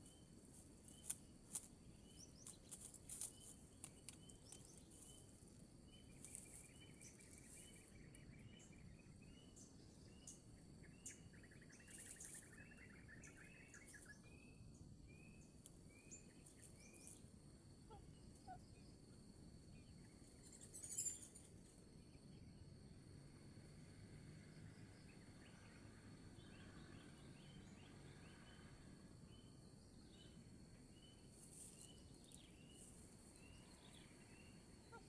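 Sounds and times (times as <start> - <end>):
small bird chirping: 0.0 - 17.2, 19.7 - 21.6, 29.3 - 35.0
insect drone: 0.0 - 35.0.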